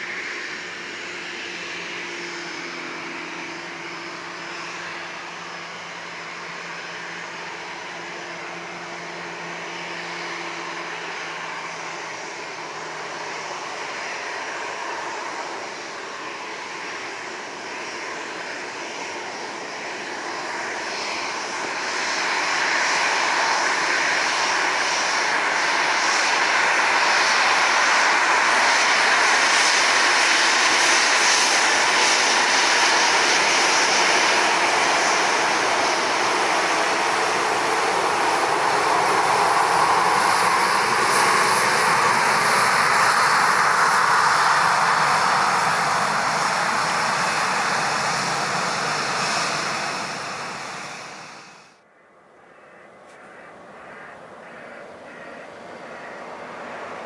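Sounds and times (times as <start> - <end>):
jet engines on takeoff: 0.0 - 57.0.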